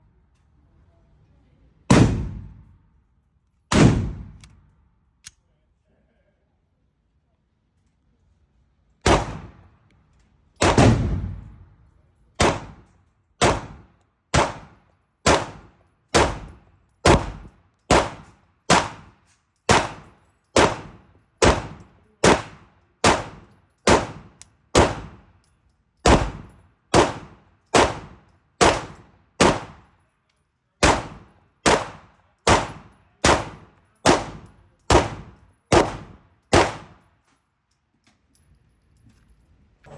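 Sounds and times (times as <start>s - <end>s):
pistol shots: 1.9s - 2.7s, 3.7s - 4.6s, 9.0s - 9.7s, 10.6s - 11.6s, 12.4s - 25.3s, 26.0s - 29.9s, 30.8s - 37.0s.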